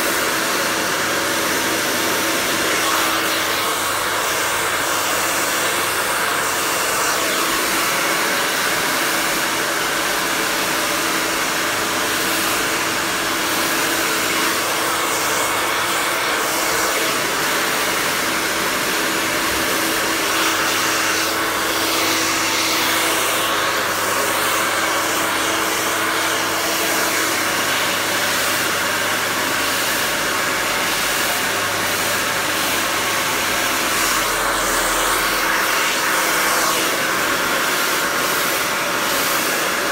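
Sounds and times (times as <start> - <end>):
hair dryer blowing air: 0.0 - 39.9.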